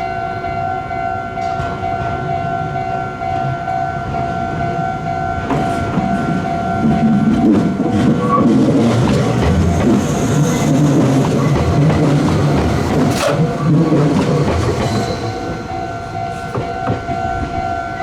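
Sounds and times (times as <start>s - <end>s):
electric train running past: 0.0s - 18.0s
wheels clacking over rail joints: 4.1s - 18.0s.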